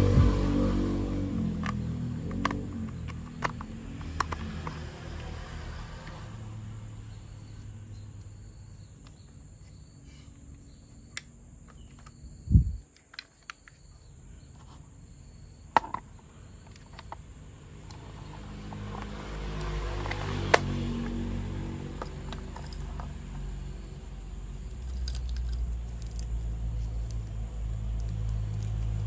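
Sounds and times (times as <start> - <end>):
low rumble: 0.0 - 2.2
faint high chirping tone: 7.0 - 12.9.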